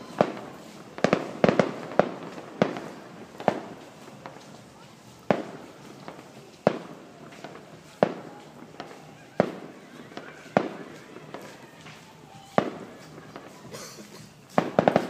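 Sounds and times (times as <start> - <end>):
fireworks bangs: 0.0 - 15.0
fireworks cracks: 0.0 - 15.0.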